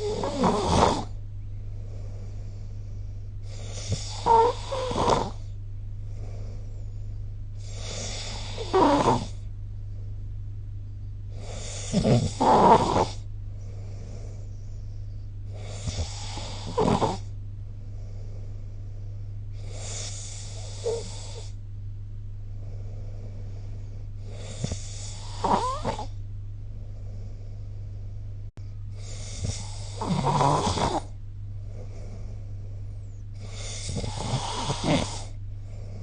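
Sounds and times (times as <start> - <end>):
person snoring: 0.0 - 1.2, 1.8 - 5.6, 7.6 - 9.5, 11.3 - 14.5, 15.5 - 17.3, 19.5 - 21.6, 22.6 - 26.2, 28.9 - 32.6, 33.4 - 36.0
steady low hum: 0.0 - 36.0.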